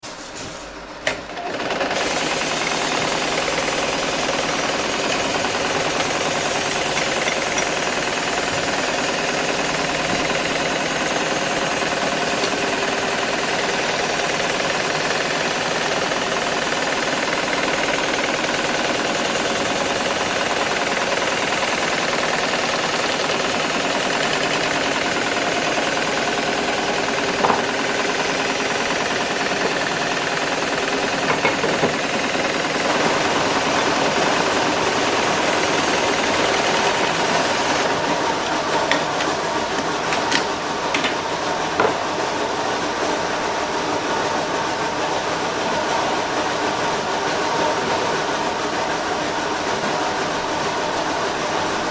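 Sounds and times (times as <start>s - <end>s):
sewing machine stitching: 1.0s - 41.2s.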